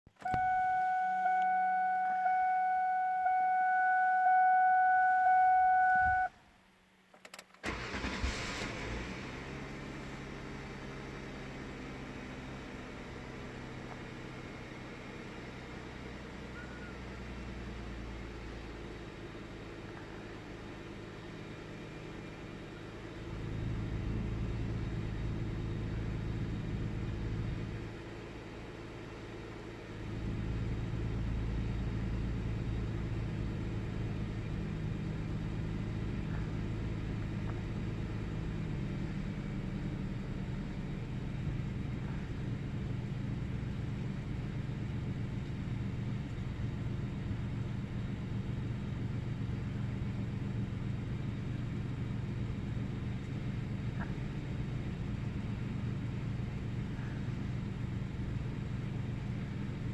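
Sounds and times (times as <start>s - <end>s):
car engine cranking and starting: 0.1s - 2.7s, 7.1s - 59.9s
dashboard warning tone: 0.2s - 6.4s.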